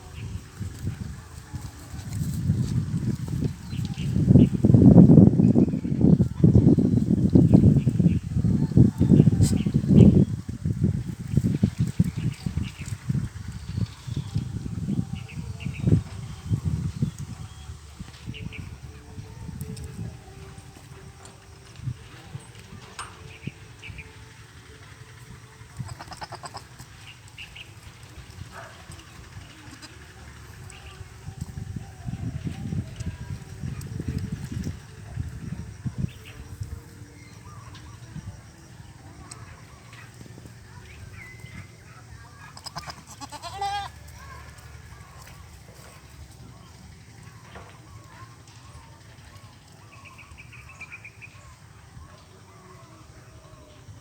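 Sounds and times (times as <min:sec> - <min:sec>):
low rumbling background noise: 0:00.0 - 0:54.0
goat bleating: 0:25.8 - 0:26.9, 0:29.6 - 0:30.0, 0:42.5 - 0:44.1.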